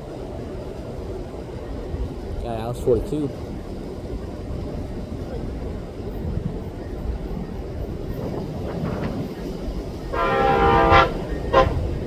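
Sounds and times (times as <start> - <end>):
low rumble of approaching train: 0.0 - 12.0
train air horn: 10.1 - 12.0.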